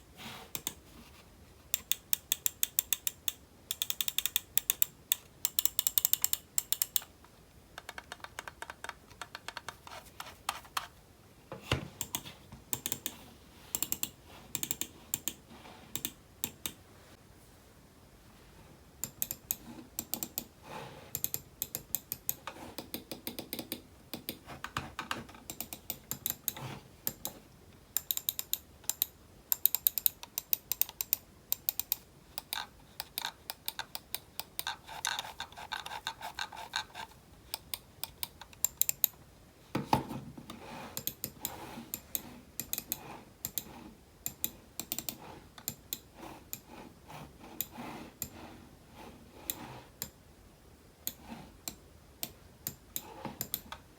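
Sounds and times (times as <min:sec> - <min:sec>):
computer keyboard typing: 0:01.8 - 0:07.1, 0:07.8 - 0:10.9, 0:12.0 - 0:13.2, 0:21.2 - 0:27.4, 0:28.0 - 0:39.1, 0:44.3 - 0:46.1.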